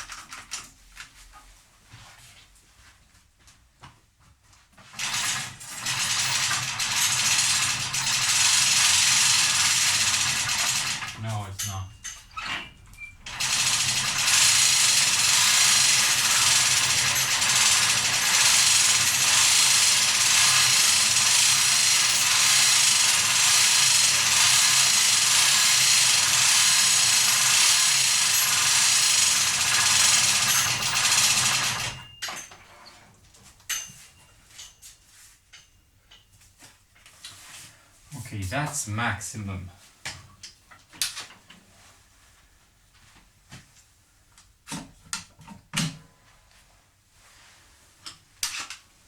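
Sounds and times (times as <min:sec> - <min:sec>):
electric power tool whirring: 0:05.8 - 0:11.2, 0:13.2 - 0:32.0.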